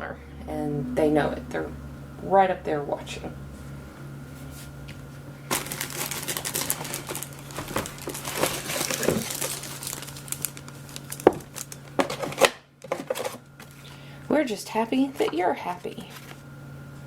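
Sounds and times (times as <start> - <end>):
packaging crinkling and rustling: 5.5 - 13.8, 16.0 - 16.4.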